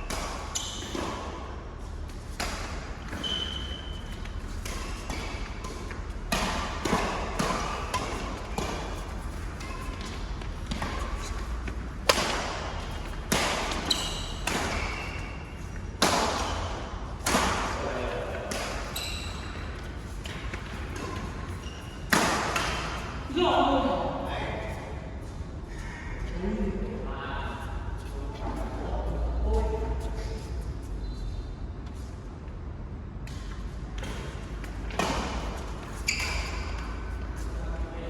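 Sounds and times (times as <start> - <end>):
shoe squeaks on court floor: 0.3 - 1.2, 3.0 - 5.8, 7.2 - 11.6, 13.6 - 15.7, 18.7 - 20.4, 21.0 - 22.1, 35.9 - 37.1
rackets hitting shuttlecock: 2.4 - 15.3, 15.9 - 19.0.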